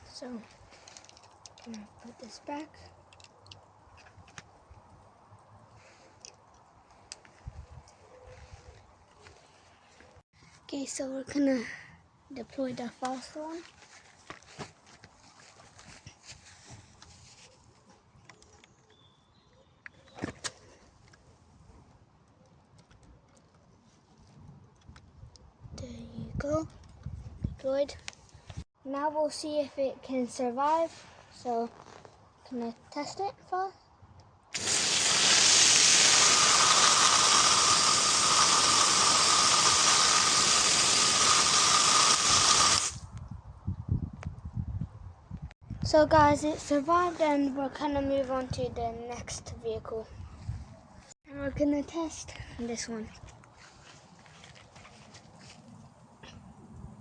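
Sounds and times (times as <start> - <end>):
electric air blower running: 34.6 - 43.0.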